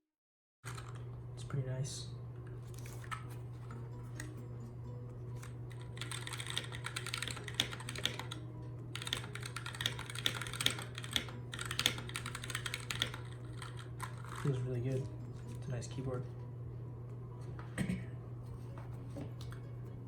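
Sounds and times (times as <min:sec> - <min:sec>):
mechanical keyboard typing: 0:05.4 - 0:08.4, 0:09.0 - 0:14.6.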